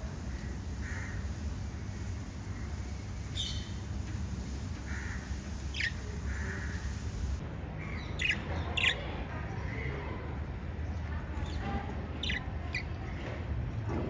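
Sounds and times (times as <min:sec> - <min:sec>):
lovebirds chirping: 0:00.0 - 0:07.4
steady low hum: 0:00.0 - 0:07.4.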